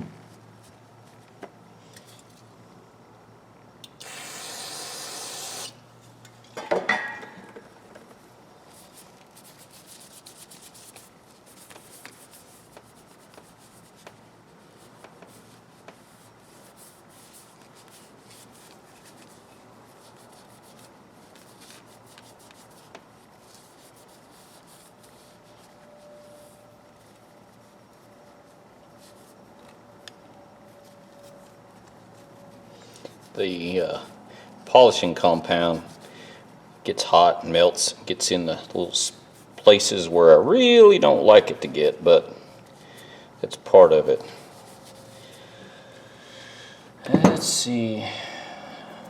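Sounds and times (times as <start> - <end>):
aerosol spray hiss: 3.9 - 5.8.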